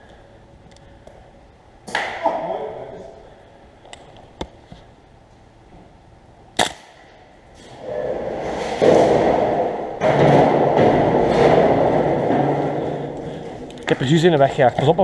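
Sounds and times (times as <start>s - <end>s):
airsoft guns firing sharp shots: 6.6s - 7.2s.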